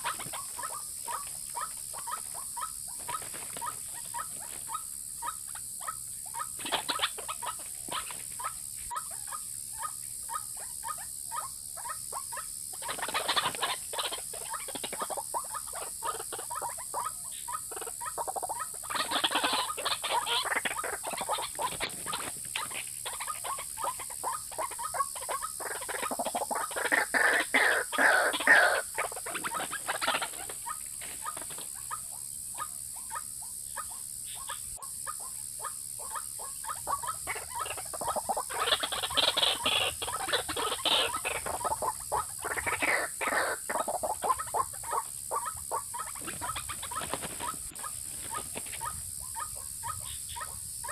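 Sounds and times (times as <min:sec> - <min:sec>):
steady high hiss: 0:00.0 - 0:50.9
waterhen calling harsh notes: 0:38.6 - 0:47.0.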